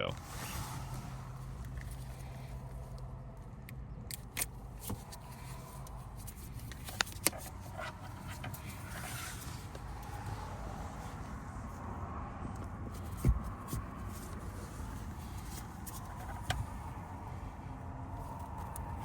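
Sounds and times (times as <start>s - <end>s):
hard plastic clicks and scrapes: 4.1s - 10.1s, 12.6s - 17.0s.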